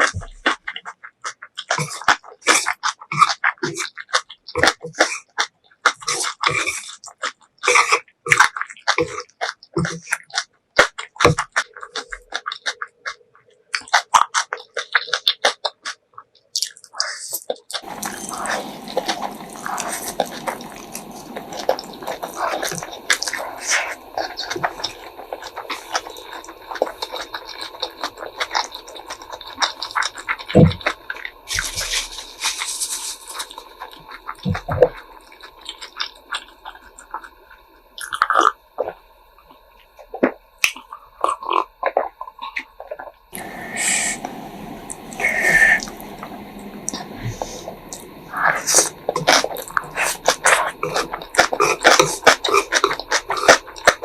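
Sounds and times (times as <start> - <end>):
chewing and slurping noodles: 0.0 - 54.0
background hum and hiss: 17.7 - 54.0.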